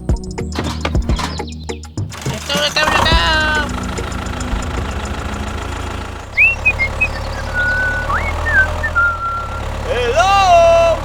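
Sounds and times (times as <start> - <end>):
small engine knocking: 0.2 - 11.0
whistled chirps: 4.0 - 10.7.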